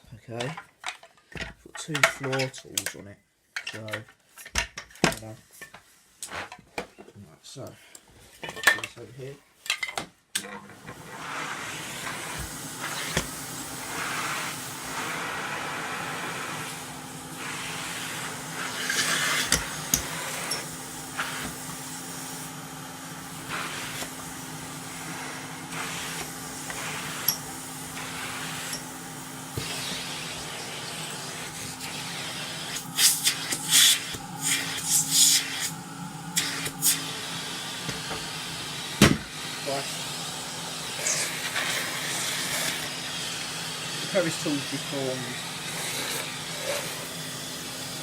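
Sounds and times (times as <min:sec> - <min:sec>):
vacuum cleaner motor hum: 0:10.7 - 0:48.0
suction hiss: 0:10.8 - 0:48.0.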